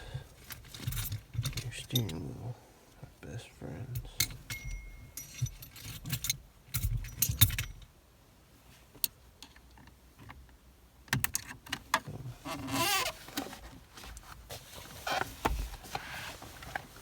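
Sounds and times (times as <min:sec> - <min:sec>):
metal tools clicking: 0:04.2 - 0:07.7.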